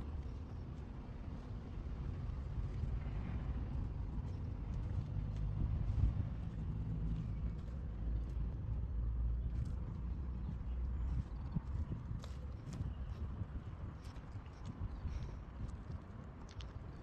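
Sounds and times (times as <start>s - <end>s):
faint clicks: 15.9s - 17.0s.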